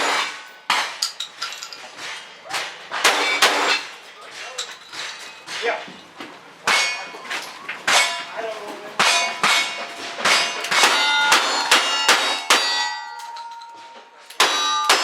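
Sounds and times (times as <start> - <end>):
steel target ringing: 6.6 - 7.3, 7.9 - 8.4, 9.0 - 15.0.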